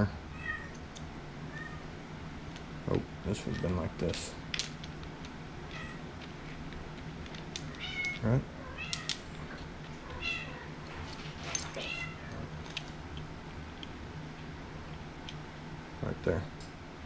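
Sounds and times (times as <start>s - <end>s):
low steady hum: 0.0s - 17.0s
pet animal high-pitched calls: 10.1s - 10.8s.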